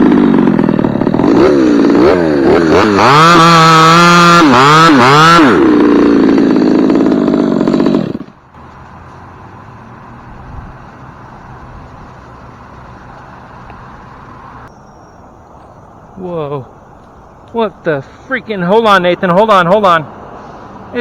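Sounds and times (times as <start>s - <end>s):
chainsaw revving and idling: 0.0s - 8.7s.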